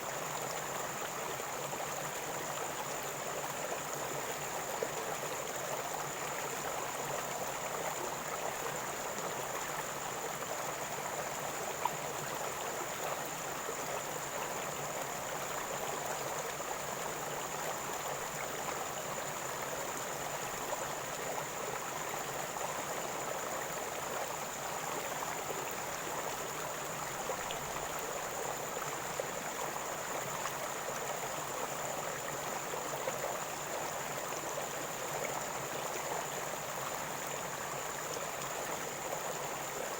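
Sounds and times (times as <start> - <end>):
river water gurgling: 0.0 - 39.9.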